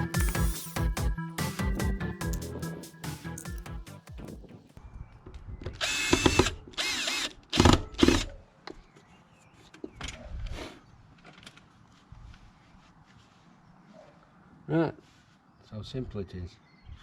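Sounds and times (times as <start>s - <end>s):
cordless drill bursts: 5.8s - 8.3s.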